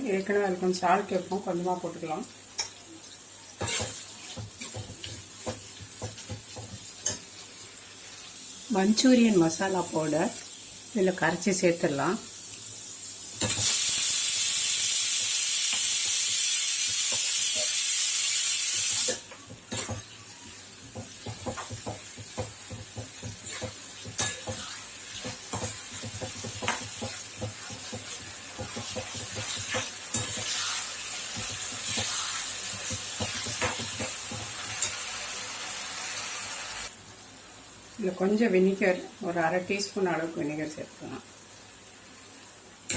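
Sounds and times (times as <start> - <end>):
food sizzling in a hot pan: 0.0 - 42.9
spatula scraping a pan: 3.6 - 7.2, 19.7 - 35.0.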